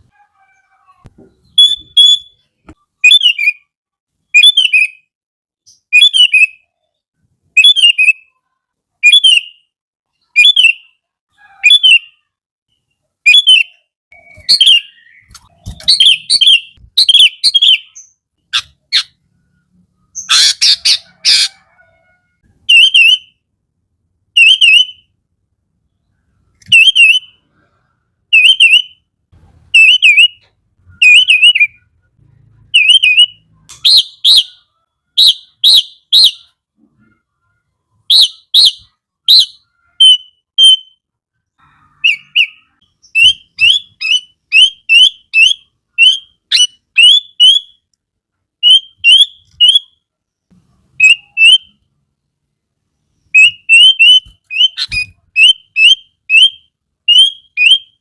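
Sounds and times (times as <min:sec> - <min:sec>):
bird whistling song: 0:01.4 - 0:03.7, 0:04.3 - 0:05.1, 0:05.7 - 0:06.9, 0:07.6 - 0:08.4, 0:09.0 - 0:11.0, 0:11.6 - 0:12.3, 0:13.2 - 0:19.2, 0:22.7 - 0:23.4, 0:24.4 - 0:25.1, 0:26.1 - 0:27.4, 0:28.3 - 0:29.0, 0:29.7 - 0:32.0, 0:32.8 - 0:41.0, 0:42.0 - 0:47.8, 0:48.6 - 0:50.0, 0:51.0 - 0:51.8, 0:53.2 - 0:58.0.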